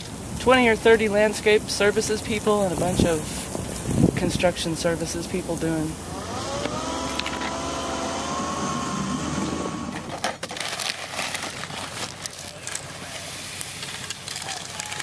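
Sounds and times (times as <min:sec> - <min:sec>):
motor humming: 0:06.0 - 0:10.1
crunching and scraping with clicks: 0:06.6 - 0:07.6, 0:09.9 - 0:15.0.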